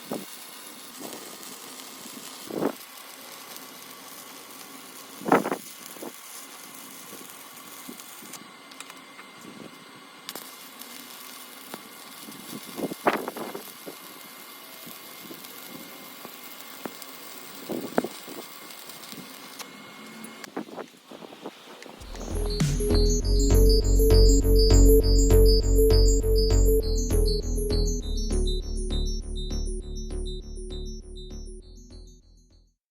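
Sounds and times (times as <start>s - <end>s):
sharp welding pops: 0.0s - 9.6s, 10.3s - 19.7s
arc welding hiss and crackle: 0.0s - 22.5s.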